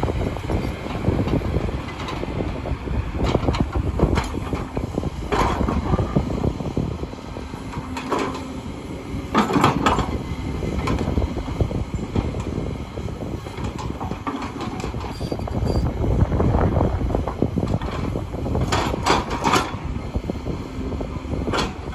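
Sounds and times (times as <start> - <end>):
excavator engine running: 0.0 - 21.9
machine rattles and squeaks: 13.6 - 16.0.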